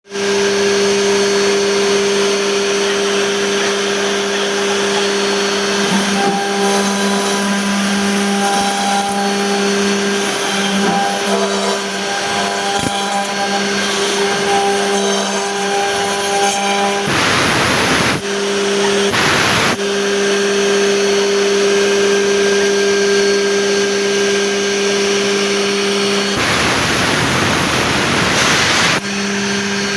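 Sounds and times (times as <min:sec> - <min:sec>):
router spindle motor hum: 0:00.1 - 0:29.9.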